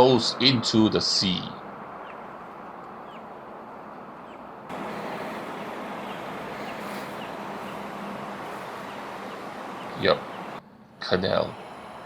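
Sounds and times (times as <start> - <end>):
outdoor background noise: 0.0 - 12.0
faint low hum: 3.9 - 12.0.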